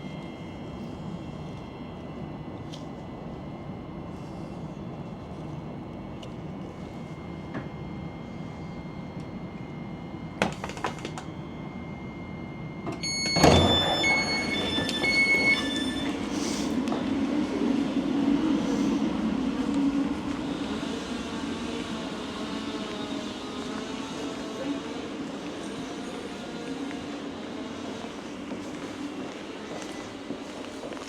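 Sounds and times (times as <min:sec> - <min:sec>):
train door clicks: 0:12.8 - 0:16.2
train door clunk: 0:12.8 - 0:17.1.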